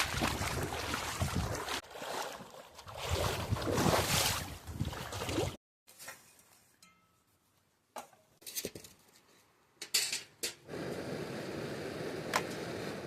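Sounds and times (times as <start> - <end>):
metal cookware clinking: 9.8 - 10.6.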